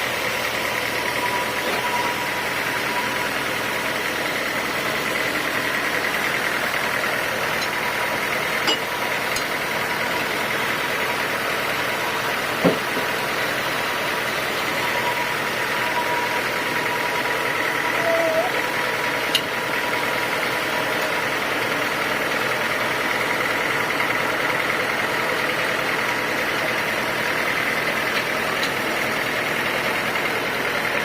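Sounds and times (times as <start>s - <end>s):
sawmill machinery whining: 0.0s - 31.0s.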